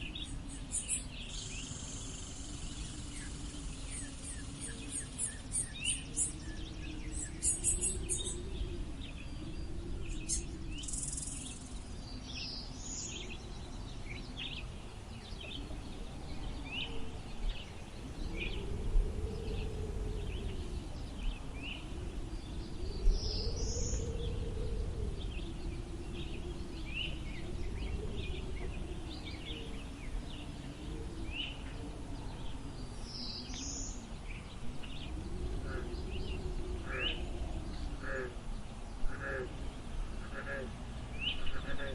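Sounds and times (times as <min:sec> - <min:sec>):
wind blowing and whistling: 0:00.0 - 0:41.9
bird chirps: 0:00.1 - 0:08.6.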